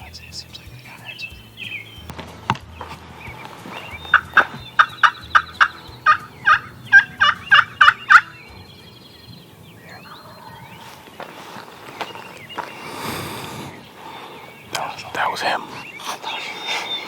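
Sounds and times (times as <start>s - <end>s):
turkey yelping: 3.7s - 8.7s, 10.0s - 11.0s.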